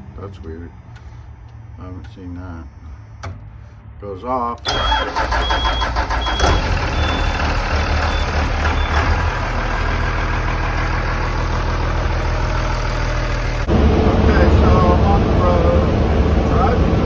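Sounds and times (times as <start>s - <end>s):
bus engine idling: 4.5s - 17.0s.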